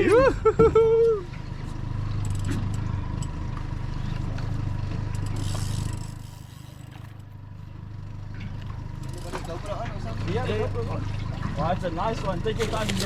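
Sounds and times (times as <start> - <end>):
outboard motor running: 0.0 - 13.0.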